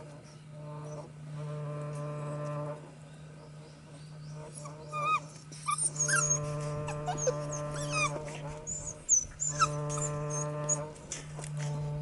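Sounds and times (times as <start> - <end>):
droning hum: 0.0 - 12.0
puppies whimpering and yipping: 4.6 - 11.0.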